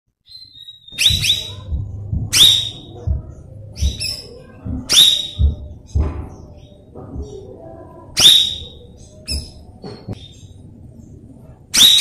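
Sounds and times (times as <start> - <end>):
dull low thumps: 0.9 - 8.2.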